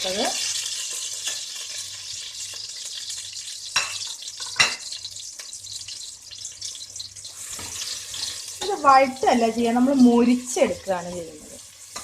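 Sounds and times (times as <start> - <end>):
onions sizzling in fat: 0.0 - 12.0.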